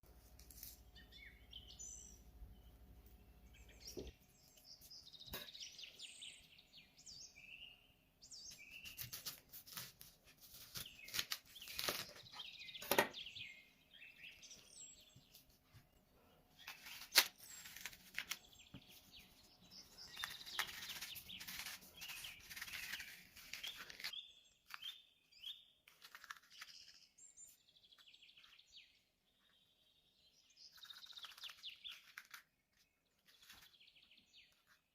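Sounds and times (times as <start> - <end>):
birds chirping: 0.8 - 9.9, 10.5 - 25.8.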